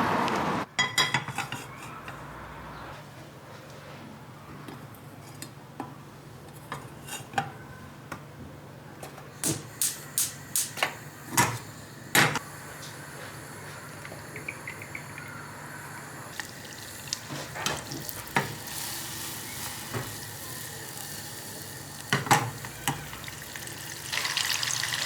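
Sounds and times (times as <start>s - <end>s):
dishes and utensils clinking: 0.8s - 2.2s.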